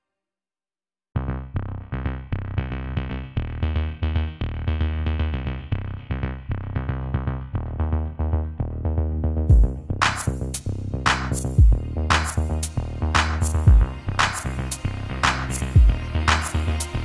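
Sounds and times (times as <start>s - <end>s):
heavy bass line: 1.2s - 17.0s
synthesizer notes: 7.7s - 17.0s
electronic music with steady beat: 9.5s - 17.0s.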